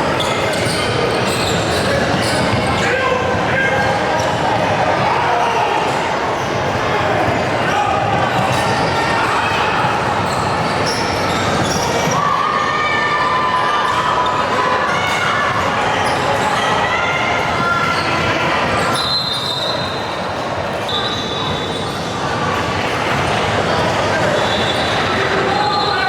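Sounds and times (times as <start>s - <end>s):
sneakers squeaking on court: 0.1s - 2.8s, 9.9s - 12.2s.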